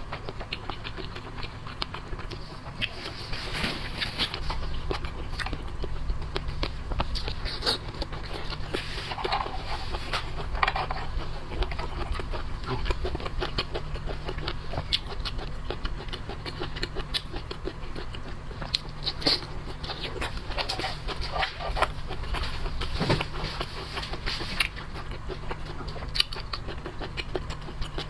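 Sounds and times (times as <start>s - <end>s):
steady low hum: 0.0s - 28.0s
wet chewing and lip smacking: 0.0s - 28.0s.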